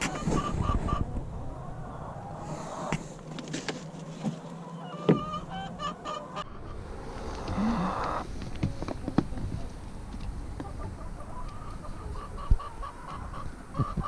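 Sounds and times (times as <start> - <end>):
hens squawking: 0.0 - 3.2, 4.2 - 8.2, 10.6 - 14.0.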